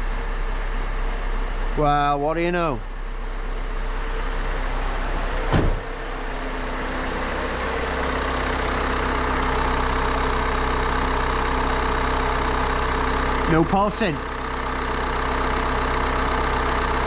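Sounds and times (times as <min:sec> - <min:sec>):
diesel engine idling: 0:00.0 - 0:17.0
single knock: 0:05.5 - 0:05.8.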